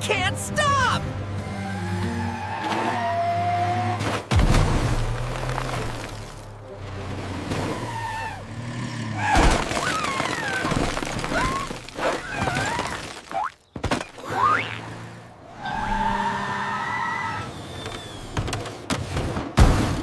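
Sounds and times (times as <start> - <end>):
cartoon truck skidding on ice: 1.5 - 6.4, 7.2 - 20.0
wavering squealing glides: 7.0 - 10.6, 14.2 - 18.4.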